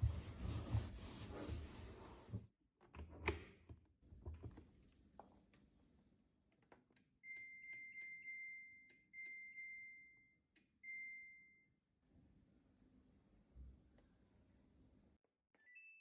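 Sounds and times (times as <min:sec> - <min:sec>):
washing machine beeps: 0:07.2 - 0:11.8.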